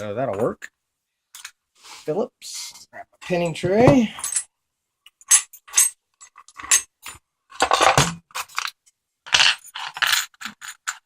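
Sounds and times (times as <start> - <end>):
metal hand tools clinking: 4.0 - 4.5.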